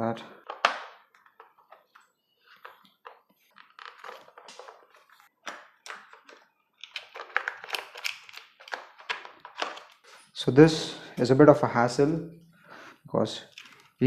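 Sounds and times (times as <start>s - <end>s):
hard plastic parts clicking and scraping: 0.4s - 10.3s, 13.4s - 14.0s.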